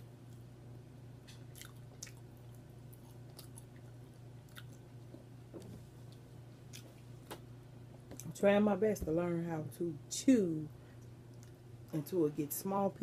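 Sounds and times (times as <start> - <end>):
steady low hum: 0.0 - 13.0
person chewing with mouth smacks: 1.4 - 5.3, 11.3 - 11.6.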